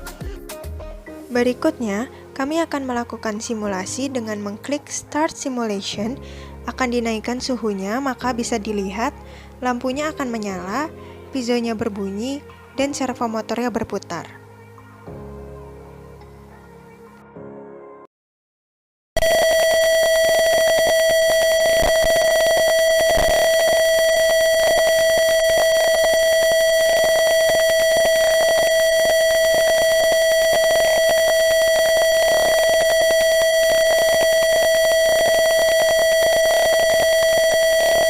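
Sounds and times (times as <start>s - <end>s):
piezo buzzer alarm tone: 19.2s - 38.0s.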